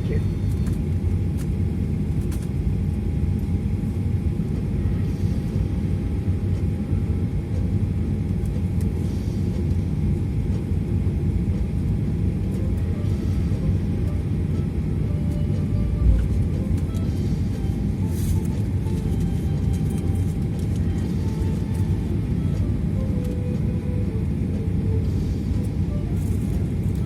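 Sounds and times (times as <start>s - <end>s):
faint steady whine: 0.0s - 27.0s
jet airliner cabin rumble: 0.0s - 27.0s.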